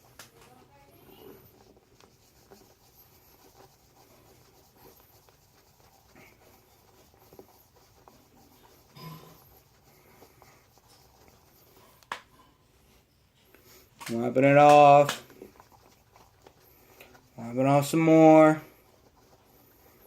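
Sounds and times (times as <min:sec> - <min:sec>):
cotton ball rubbing metal: 0:00.0 - 0:12.6, 0:13.8 - 0:20.0.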